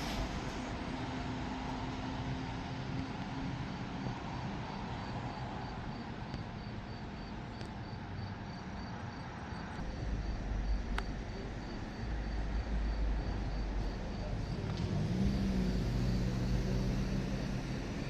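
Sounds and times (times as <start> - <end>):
insects chirping: 4.0 - 18.0
low rumble: 9.8 - 18.0.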